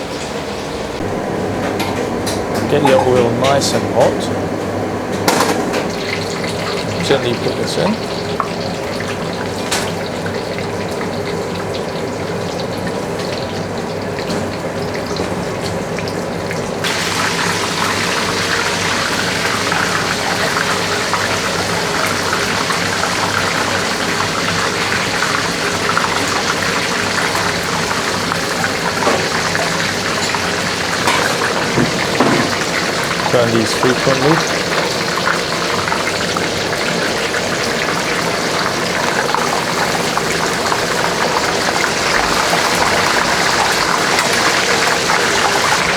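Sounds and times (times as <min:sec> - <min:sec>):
food sizzling in hot oil: 0:16.8 - 0:45.9.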